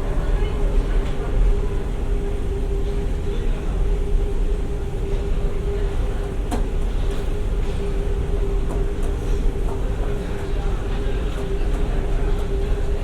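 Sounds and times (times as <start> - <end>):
train interior rumble: 0.0 - 13.0.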